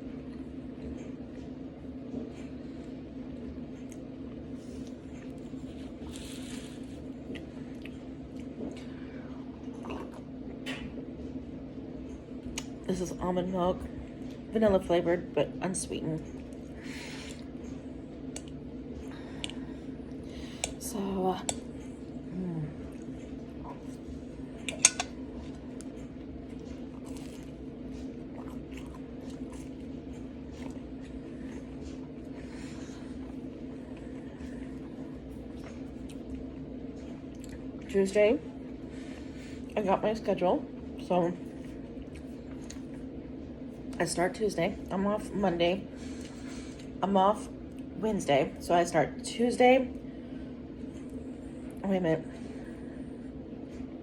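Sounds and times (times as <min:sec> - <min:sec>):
steady low hum: 0:00.0 - 0:54.0
chewing with wet mouth clicks: 0:07.2 - 0:09.0, 0:12.4 - 0:12.8, 0:16.3 - 0:18.6, 0:22.8 - 0:37.9, 0:41.5 - 0:43.1.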